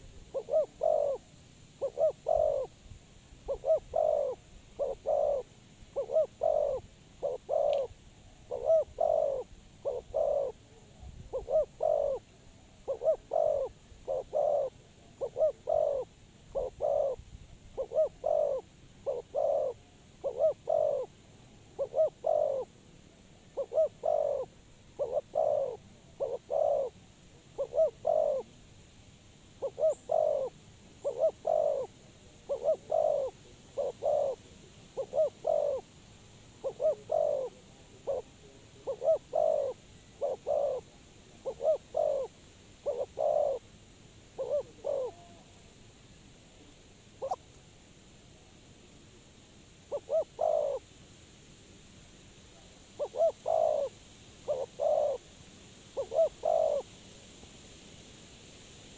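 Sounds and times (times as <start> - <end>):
dove cooing: 0.0 - 2.8, 3.4 - 22.8, 23.5 - 28.6, 29.6 - 35.9, 36.6 - 43.7, 44.4 - 45.6, 47.2 - 47.4, 49.9 - 50.8, 53.0 - 55.2, 55.9 - 56.9.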